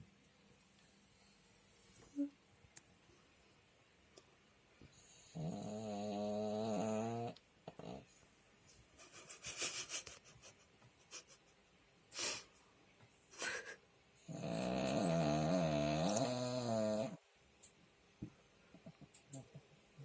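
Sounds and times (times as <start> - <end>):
dog snoring: 5.0 - 8.1, 14.2 - 17.2.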